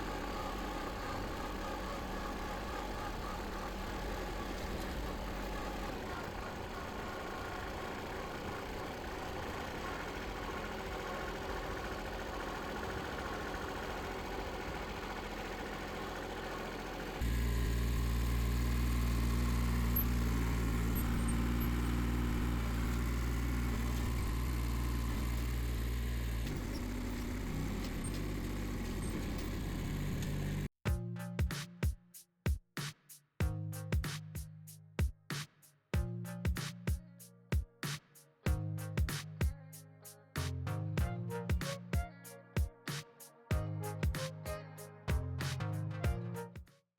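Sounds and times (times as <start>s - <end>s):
small gasoline engine running: 0.0s - 30.7s.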